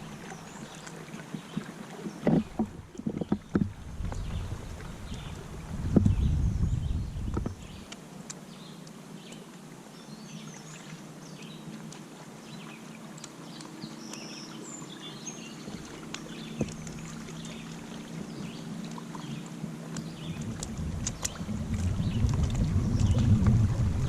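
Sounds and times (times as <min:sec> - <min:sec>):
birds chirping: 0:12.4 - 0:23.3.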